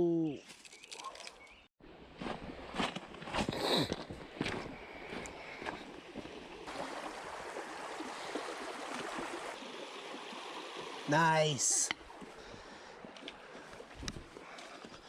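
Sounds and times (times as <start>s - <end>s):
creek water running over rocks: 1.9s - 15.0s.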